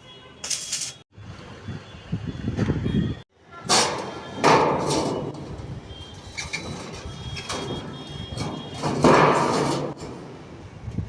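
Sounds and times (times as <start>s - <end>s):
metal sheets scraping: 0.4s - 1.0s, 3.6s - 10.6s.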